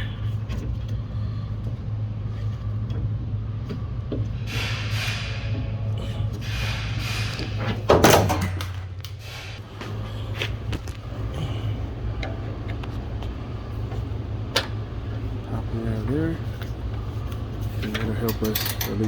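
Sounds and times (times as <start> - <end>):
loud door thunk: 7.7 - 8.6.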